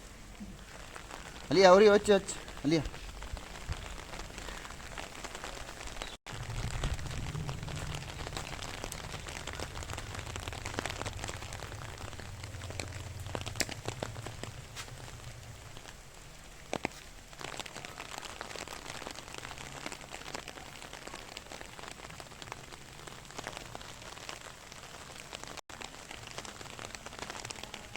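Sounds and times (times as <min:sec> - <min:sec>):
steady rain falling: 0:00.0 - 0:27.9
raindrops tapping: 0:00.1 - 0:27.9
low rumble: 0:06.3 - 0:15.8.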